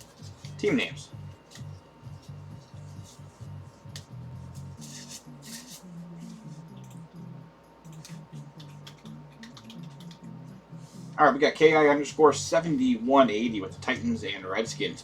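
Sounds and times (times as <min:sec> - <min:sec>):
quiet music with stepping bass: 0:00.0 - 0:15.0.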